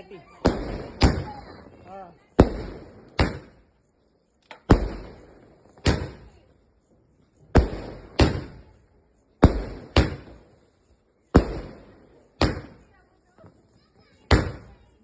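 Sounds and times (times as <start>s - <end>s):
firework cake bangs: 0.2s - 1.7s, 2.3s - 3.7s, 4.6s - 6.4s, 7.5s - 8.8s, 9.4s - 10.6s, 11.2s - 13.0s, 14.0s - 15.0s.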